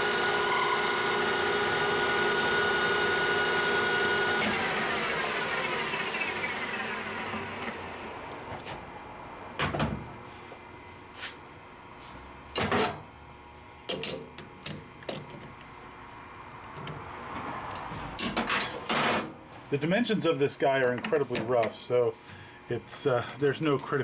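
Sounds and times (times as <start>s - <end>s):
machine motor spinning down: 0.0s - 8.4s.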